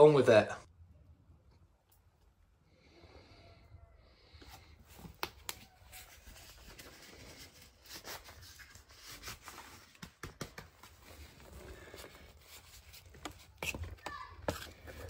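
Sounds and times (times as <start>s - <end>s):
scratchy rustling: 10.7s - 15.0s.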